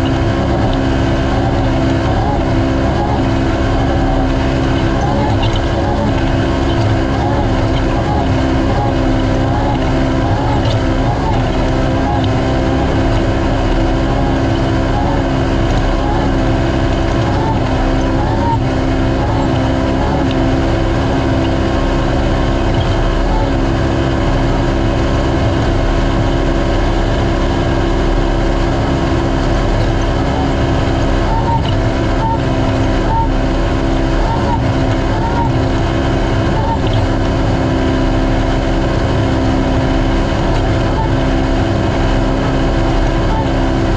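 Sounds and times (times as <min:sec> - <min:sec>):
utility vehicle engine running: 0:00.0 - 0:43.9.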